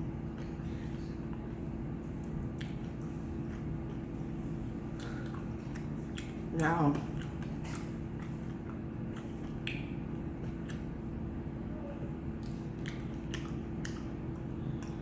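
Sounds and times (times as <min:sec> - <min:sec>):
low electrical hum: 0:00.0 - 0:15.0
person chewing: 0:00.2 - 0:04.1, 0:04.8 - 0:11.2, 0:12.3 - 0:15.0
wet mouth clicks and smacks: 0:02.2 - 0:03.1, 0:05.0 - 0:10.9, 0:12.4 - 0:15.0.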